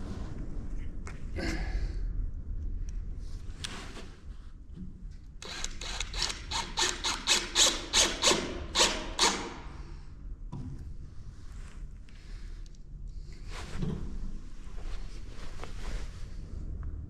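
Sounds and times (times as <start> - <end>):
hand tool scraping: 5.4 - 9.5.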